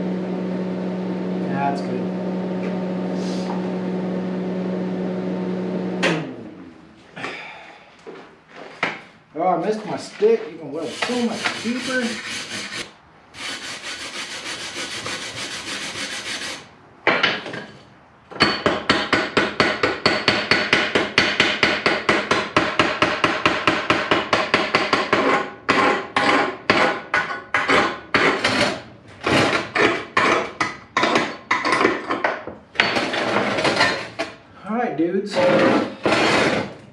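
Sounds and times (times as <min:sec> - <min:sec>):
hand tool scraping steel: 0:10.8 - 0:16.7, 0:25.0 - 0:32.0, 0:35.3 - 0:36.8.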